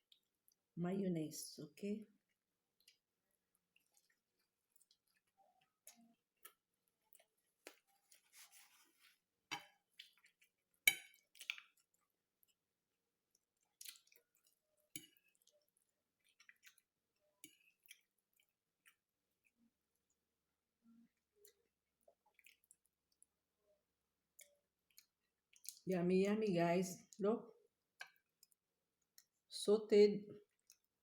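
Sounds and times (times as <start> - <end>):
person chewing food: 2.3 - 20.3, 21.1 - 23.4, 24.2 - 25.8, 27.8 - 29.5, 30.4 - 31.0.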